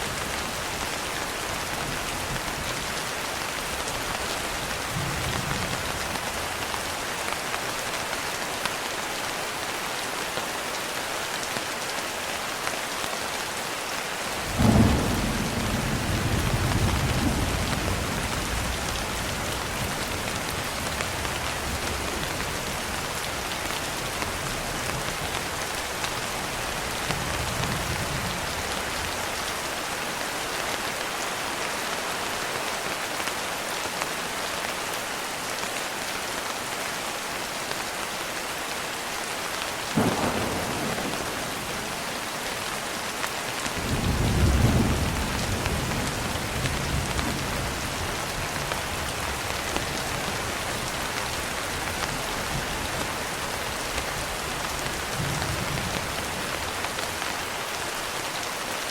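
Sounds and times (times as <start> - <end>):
heavy rain: 0.0 - 58.9
distant thunder rumble: 14.4 - 22.4, 40.0 - 42.2
thunderclap rolling into rumble: 40.0 - 41.6.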